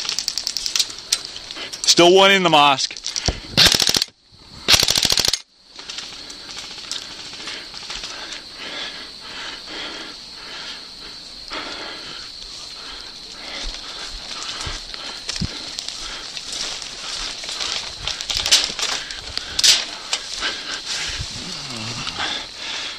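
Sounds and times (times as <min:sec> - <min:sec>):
airsoft gun full-auto burst: 0:03.6 - 0:04.1, 0:04.7 - 0:05.4.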